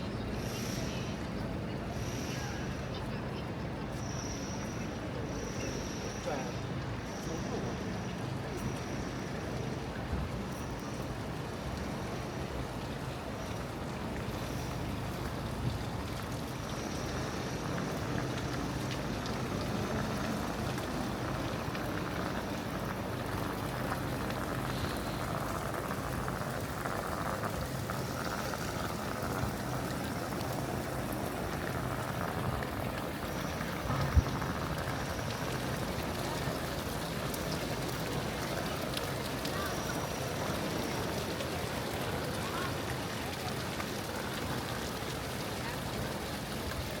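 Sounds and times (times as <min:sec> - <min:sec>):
city square ambience: 0:00.0 - 0:47.0.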